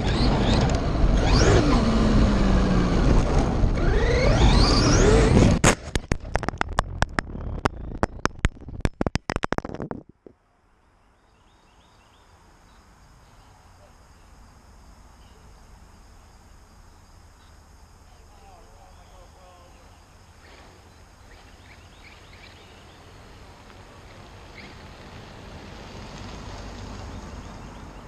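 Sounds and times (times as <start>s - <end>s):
sharp clicks and knocks: 5.5s - 10.4s.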